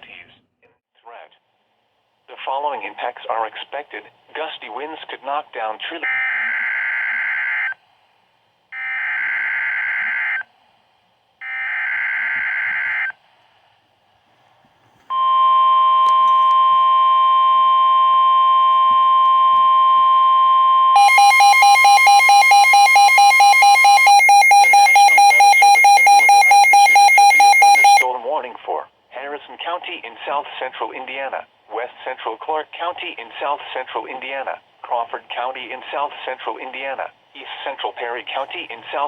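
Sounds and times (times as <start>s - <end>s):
rapidly pulsing alarm tone: 15.2s - 28.1s
buzzing data bursts: 21.0s - 28.0s
steady alert tone: 21.0s - 28.1s.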